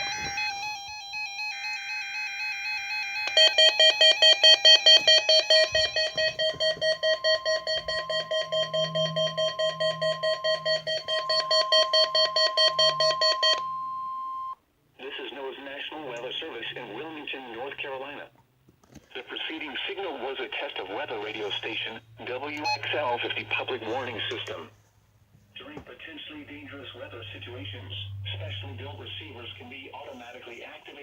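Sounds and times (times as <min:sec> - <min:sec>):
rapid beeping alarm: 0:00.0 - 0:14.6, 0:22.6 - 0:23.7
steady warning alarm tone: 0:00.0 - 0:14.6, 0:21.7 - 0:24.4, 0:26.9 - 0:30.2.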